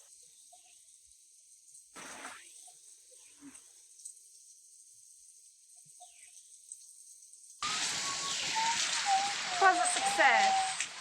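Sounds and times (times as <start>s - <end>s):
faint high-pitched hiss: 0.0s - 11.0s.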